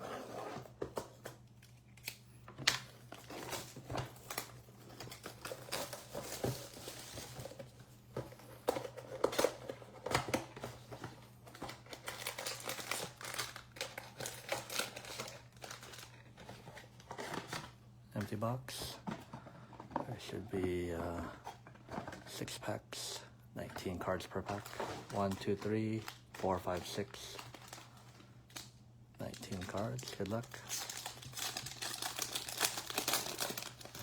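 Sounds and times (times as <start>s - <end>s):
cardboard and packs rustling: 3.0s - 22.4s, 23.8s - 28.3s, 29.4s - 34.0s
plastic shrink-wrap crinkling and tearing: 11.9s - 16.3s, 24.6s - 28.7s, 29.4s - 34.0s.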